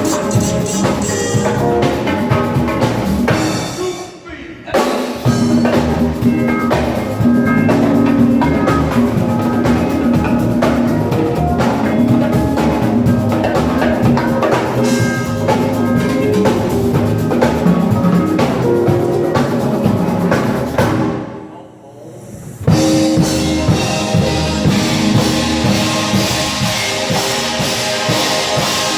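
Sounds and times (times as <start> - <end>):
held pitched notes: 0.0 - 3.7, 5.3 - 20.3
loud drumming: 0.0 - 21.3, 22.6 - 28.9.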